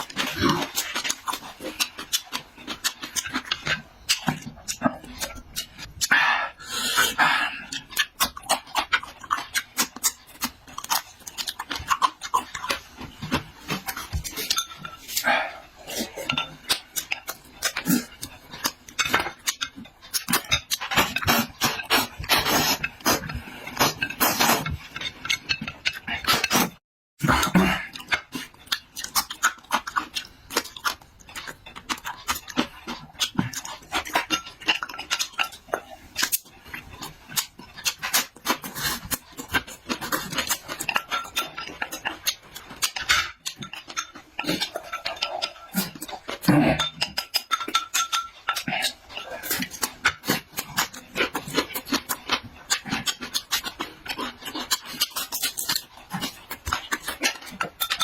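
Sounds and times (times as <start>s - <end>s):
wet chewing and smacking: 0.0s - 58.0s
cutlery clicking against a bowl: 36.2s - 58.0s.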